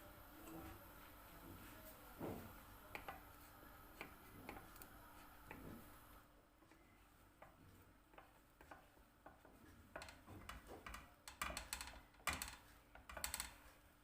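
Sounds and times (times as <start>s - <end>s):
kitchen items clicking and tapping: 7.4s - 13.7s.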